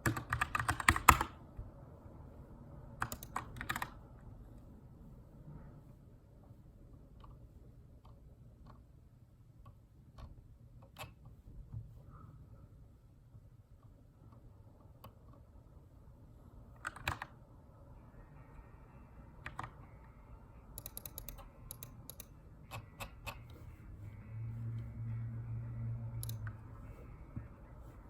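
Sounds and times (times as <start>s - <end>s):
mechanical keyboard typing: 0.0s - 1.4s, 3.0s - 4.0s, 16.8s - 17.4s, 19.4s - 19.8s, 20.8s - 23.5s, 26.2s - 26.6s.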